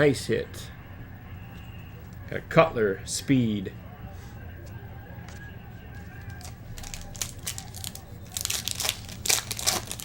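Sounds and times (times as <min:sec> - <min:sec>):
wrapper tearing and crinkling: 0:06.4 - 0:10.0.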